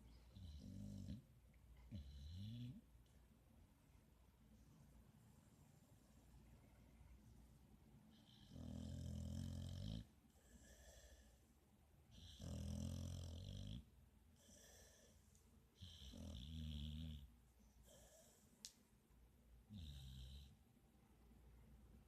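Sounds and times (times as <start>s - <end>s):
dog snoring: 0.3s - 1.2s, 1.9s - 2.8s, 8.1s - 11.3s, 12.1s - 15.1s, 15.8s - 17.3s, 19.7s - 20.6s.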